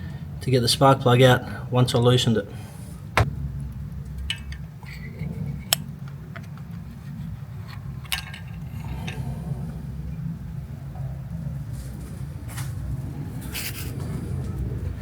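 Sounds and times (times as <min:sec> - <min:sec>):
steady low rumble: 0:03.0 - 0:06.2.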